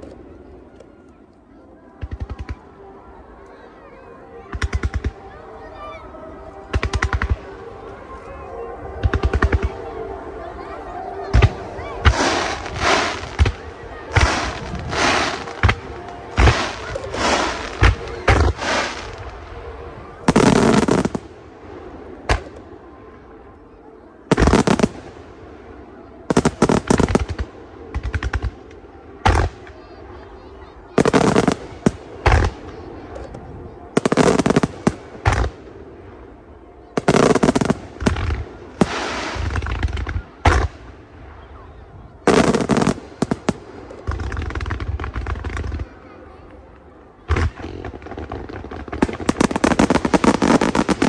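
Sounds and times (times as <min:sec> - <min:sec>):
firework crackling and hissing: 0:06.6 - 0:07.6, 0:09.0 - 0:09.8, 0:10.4 - 0:22.7, 0:24.3 - 0:25.4, 0:26.3 - 0:35.8, 0:37.0 - 0:46.6, 0:47.3 - 0:51.0
firework booms: 0:06.7 - 0:07.7, 0:11.3 - 0:19.5, 0:24.3 - 0:25.7, 0:26.3 - 0:35.8, 0:36.9 - 0:46.4, 0:47.3 - 0:51.0.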